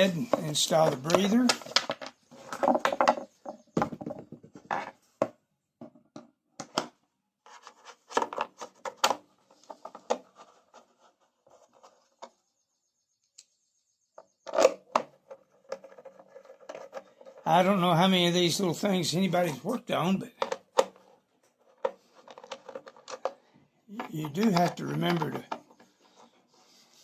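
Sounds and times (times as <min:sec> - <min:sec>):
plastic housing rubbing and clicking: 0:00.3 - 0:05.1, 0:06.6 - 0:12.5, 0:14.1 - 0:17.8, 0:20.3 - 0:27.0.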